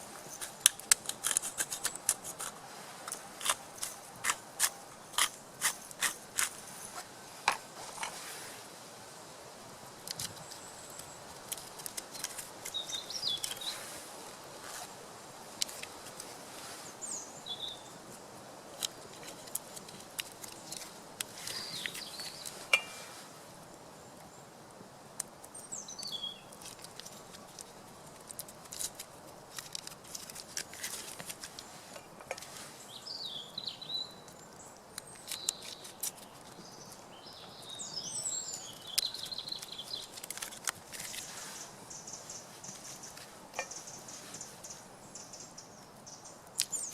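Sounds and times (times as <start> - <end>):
campfire crackling and popping: 0.1 - 6.6
bird chirps: 21.5 - 23.2, 41.1 - 46.9.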